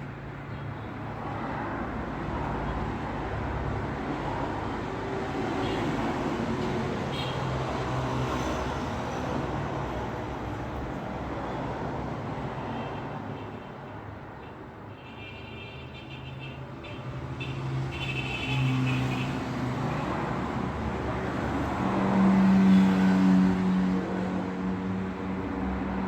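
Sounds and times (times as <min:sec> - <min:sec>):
passing vehicles: 0:00.0 - 0:14.8, 0:16.2 - 0:26.0.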